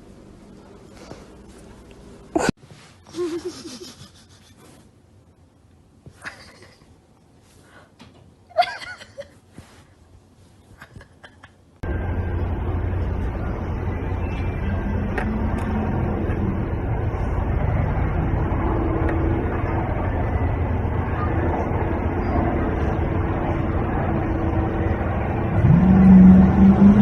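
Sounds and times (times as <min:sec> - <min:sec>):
vehicle road noise rumble: 0:11.8 - 0:27.0.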